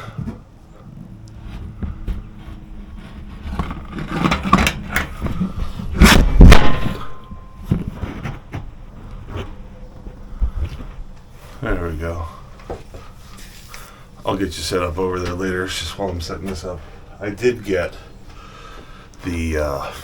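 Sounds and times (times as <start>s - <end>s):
heavy thumps: 0.0s - 11.1s
objects knocking and scraping: 0.1s - 9.6s.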